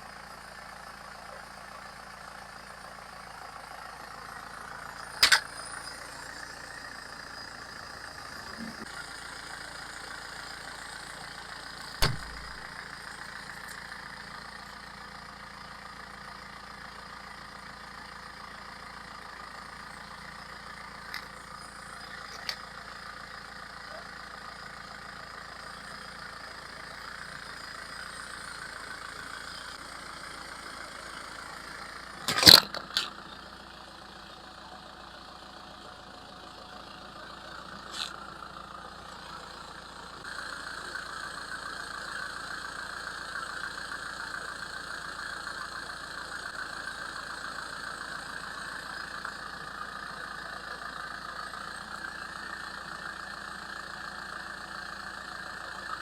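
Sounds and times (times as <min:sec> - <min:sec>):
loud sharp crunch: 0:12.0 - 0:12.6, 0:32.2 - 0:33.2.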